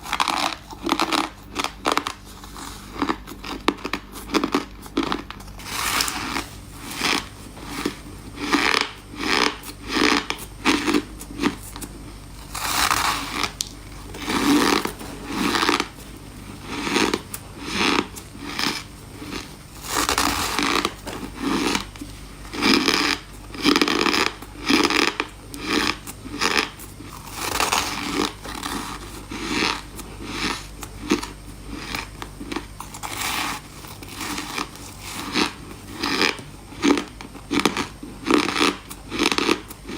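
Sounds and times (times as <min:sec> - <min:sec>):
person crunching ice: 0:00.0 - 0:39.9.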